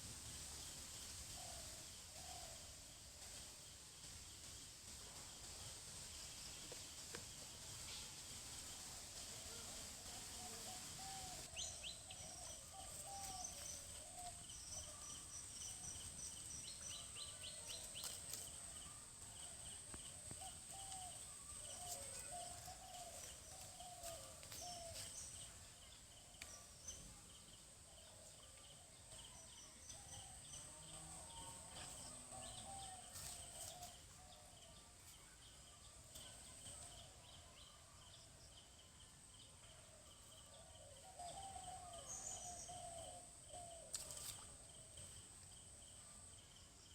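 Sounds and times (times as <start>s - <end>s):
low background hiss: 0.0s - 46.9s
birds chirping and warbling: 10.2s - 44.3s.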